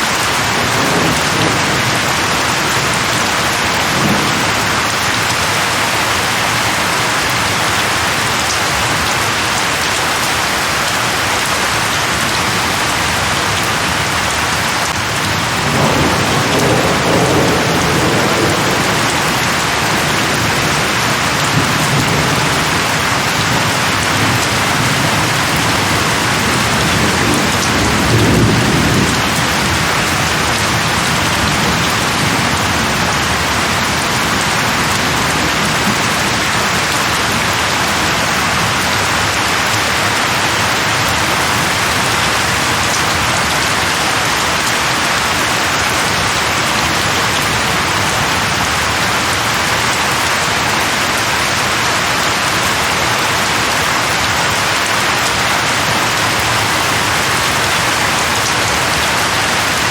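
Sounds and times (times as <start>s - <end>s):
heavy rain on leaves: 0.0s - 59.9s
low rolling thunder: 0.4s - 6.8s, 14.9s - 39.4s.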